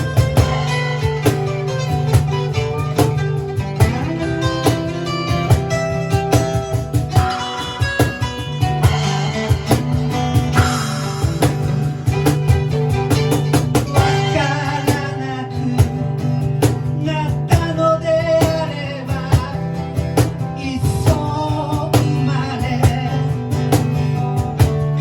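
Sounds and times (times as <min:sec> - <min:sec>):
sharp percussive hits: 0:00.0 - 0:15.1
guitar playing: 0:00.0 - 0:25.0.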